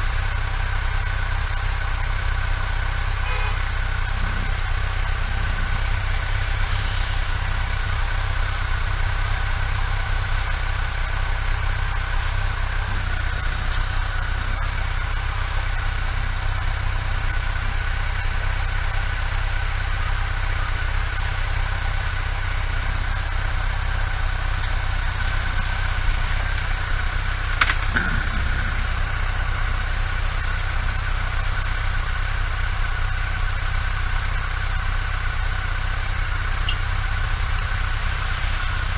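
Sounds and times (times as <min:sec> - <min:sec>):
motorcycle engine running: 0:00.0 - 0:38.9
faint whine: 0:03.0 - 0:15.8, 0:21.6 - 0:33.6.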